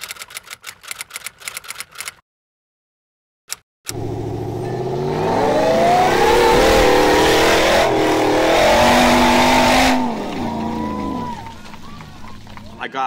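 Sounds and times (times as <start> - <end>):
vehicle engine revving: 3.9 - 12.8.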